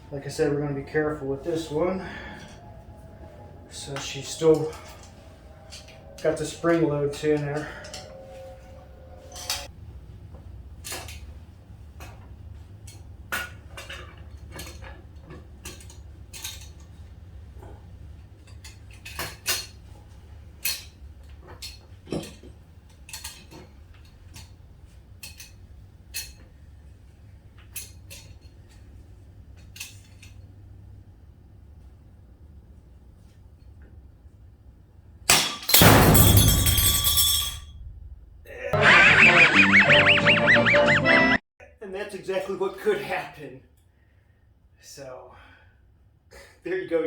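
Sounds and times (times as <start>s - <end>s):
metal tools clinking: 35.6s - 37.7s
steady low hum: 35.8s - 40.3s.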